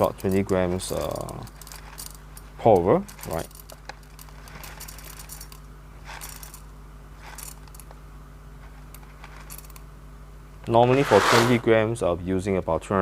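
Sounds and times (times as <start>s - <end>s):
coffee beans rattling: 0.0s - 2.4s, 3.0s - 8.0s, 8.6s - 9.8s, 10.7s - 11.7s.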